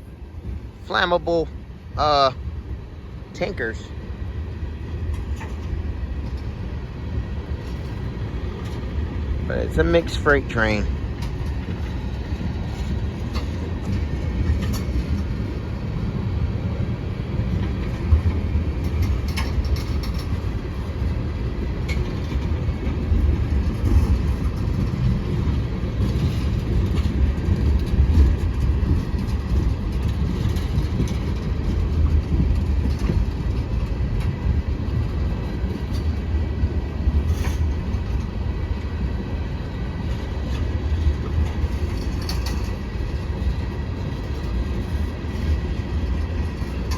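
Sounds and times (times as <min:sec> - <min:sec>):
train wheels rumbling on rail: 0:00.0 - 0:46.9
clicks and clanks: 0:17.6 - 0:20.5, 0:40.1 - 0:46.9.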